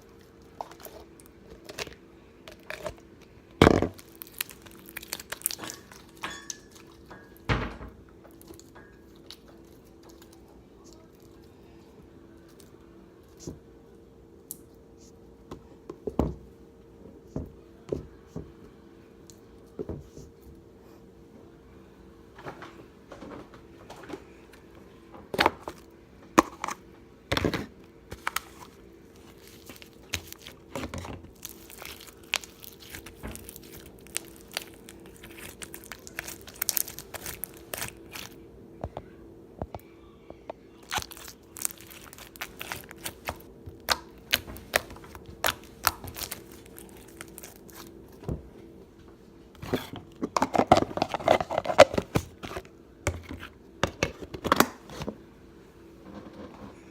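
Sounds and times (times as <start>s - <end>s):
faint steady hum: 0.0s - 56.9s
slime clicking and crackling: 4.0s - 6.2s, 29.2s - 38.4s, 40.8s - 47.9s.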